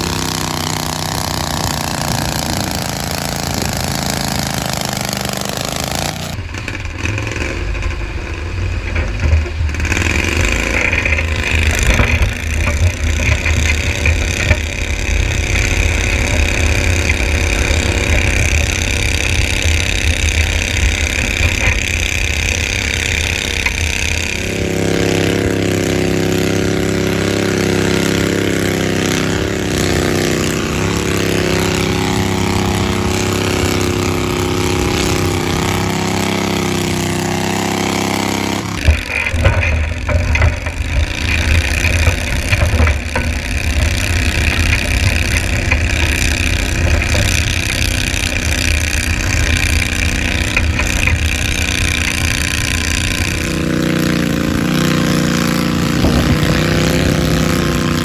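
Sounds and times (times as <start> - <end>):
tractor engine running under load: 0.0 - 58.0
high whine: 14.4 - 41.4.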